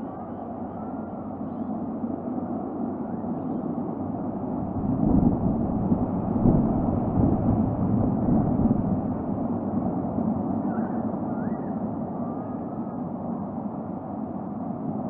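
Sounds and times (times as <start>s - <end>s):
wind buffeting microphone: 3.9s - 11.3s.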